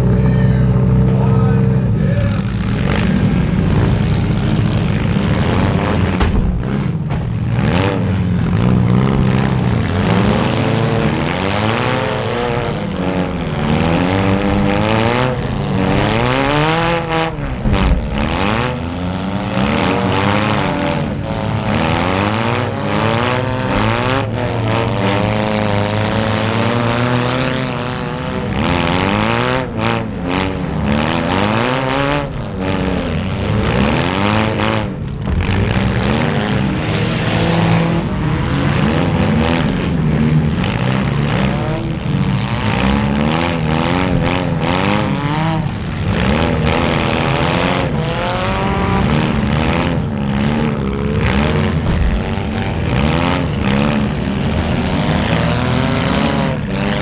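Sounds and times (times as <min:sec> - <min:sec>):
car engines revving: 0:00.0 - 0:57.0
sudden bangs: 0:06.0 - 0:07.7, 0:14.4 - 0:20.4.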